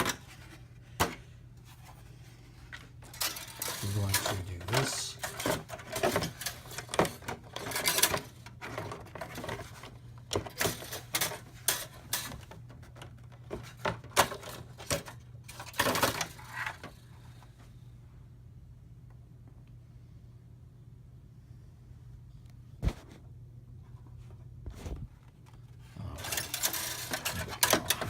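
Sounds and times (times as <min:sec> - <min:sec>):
low steady hum: 0:00.0 - 0:28.0
graphics card clicking and rattling: 0:26.2 - 0:28.0.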